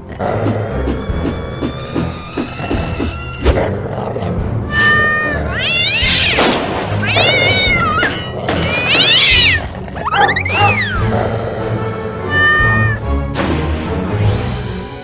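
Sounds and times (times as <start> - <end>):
background music: 0.0 - 15.0
cat meowing: 4.7 - 6.4, 7.0 - 11.1, 12.2 - 13.0.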